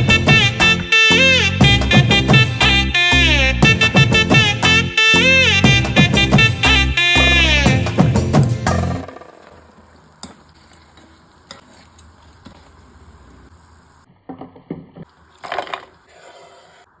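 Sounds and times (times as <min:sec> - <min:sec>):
stirring and knocking against pan: 0:07.9 - 0:17.0
food sizzling in a pan: 0:08.7 - 0:14.1.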